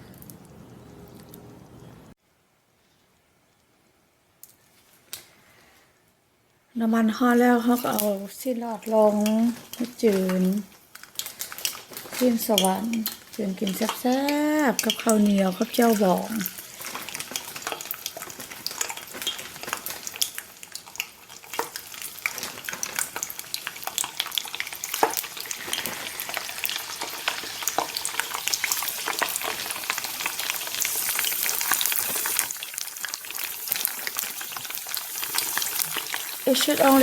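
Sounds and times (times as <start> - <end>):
meat deep-frying in oil: 7.2 - 37.0.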